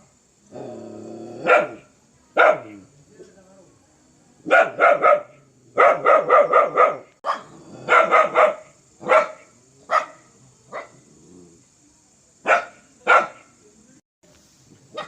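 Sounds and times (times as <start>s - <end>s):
dog barking fiercely: 1.4s - 2.8s, 4.4s - 11.0s, 12.4s - 13.5s.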